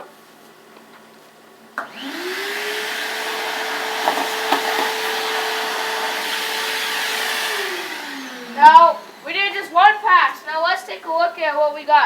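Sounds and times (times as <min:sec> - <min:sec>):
shop vacuum motor running: 0:01.8 - 0:10.5.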